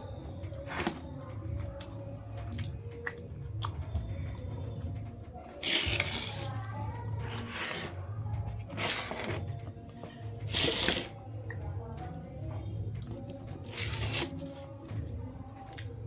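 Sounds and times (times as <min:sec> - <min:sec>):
person chewing: 0:10.5 - 0:11.5.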